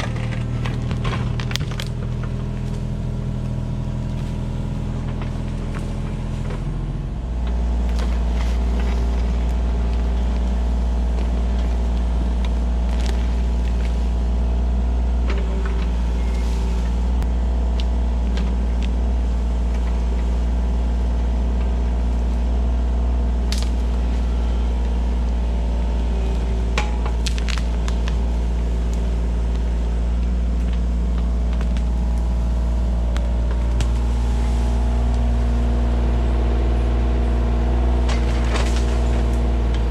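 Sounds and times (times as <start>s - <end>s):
cracks and knocks from digging: 0.0s - 2.9s, 26.7s - 28.3s, 38.0s - 39.9s
diesel excavator engine running: 0.0s - 39.9s.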